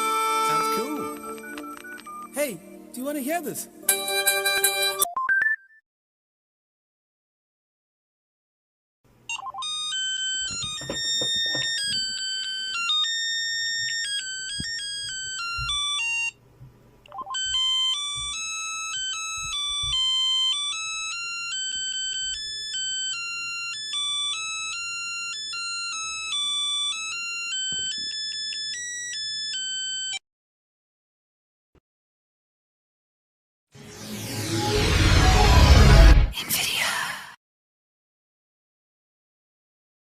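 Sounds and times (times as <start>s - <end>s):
synthesized ringtone melody: 0.0s - 2.7s, 3.8s - 5.8s, 9.3s - 16.4s, 17.1s - 30.2s.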